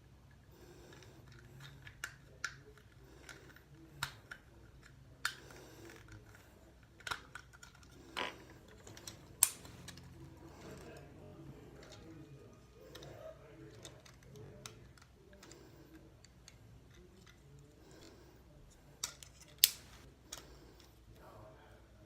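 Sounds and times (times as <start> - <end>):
plastic toy parts clicking: 0.9 - 10.1, 13.7 - 18.1, 19.0 - 20.4.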